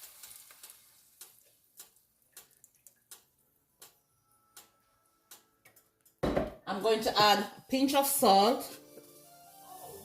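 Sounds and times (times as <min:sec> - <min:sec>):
onions sizzling in a pot: 0:00.0 - 0:02.1, 0:07.7 - 0:10.0.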